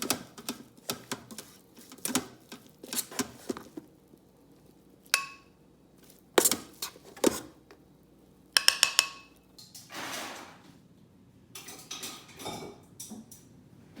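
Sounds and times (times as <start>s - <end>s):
utensils clinking against dishes: 5.1s - 5.5s, 6.4s - 7.4s, 11.6s - 13.5s.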